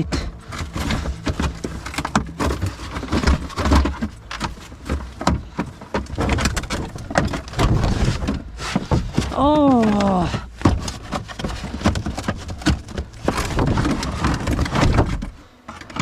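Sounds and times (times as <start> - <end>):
dull low thuds: 0.0 - 9.5
handling knocks and clicks: 0.0 - 16.0.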